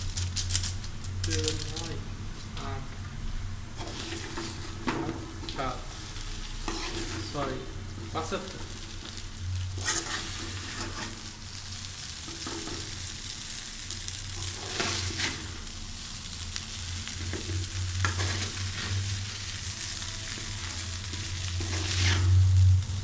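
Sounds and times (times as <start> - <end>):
noodles sizzling in a pan: 0.0 - 2.0, 3.6 - 23.0
low steady hum: 0.0 - 23.0
spoon scraping a pan: 3.8 - 5.2, 6.5 - 7.4, 9.7 - 11.3, 14.4 - 15.6, 17.2 - 22.5.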